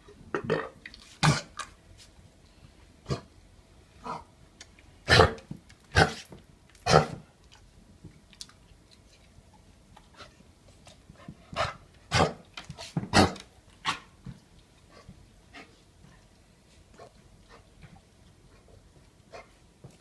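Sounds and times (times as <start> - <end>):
dog coughing: 5.0 - 6.2, 6.8 - 7.2, 11.6 - 12.4, 13.1 - 13.4.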